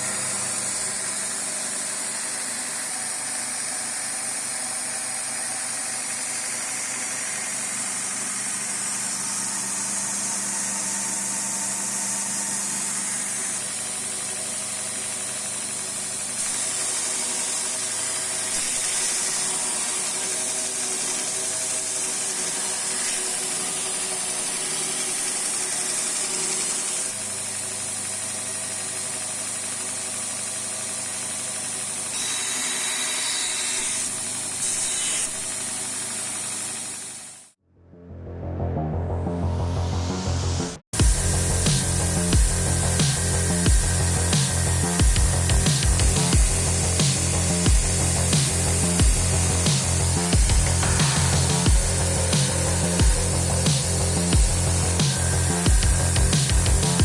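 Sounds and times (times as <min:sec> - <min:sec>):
electric motor humming: 0:00.0 - 0:30.0, 0:41.0 - 0:57.0
abrasive belt hissing: 0:41.0 - 0:57.0.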